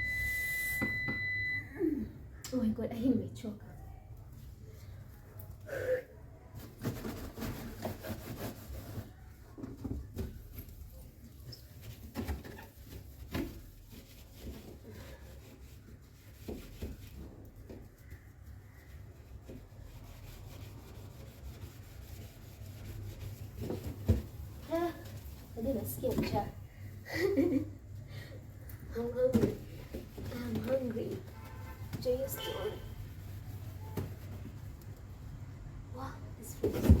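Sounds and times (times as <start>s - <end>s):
hand scrubbing and rubbing: 30.0s - 34.8s
fridge parts knocking and clattering: 36.6s - 37.0s.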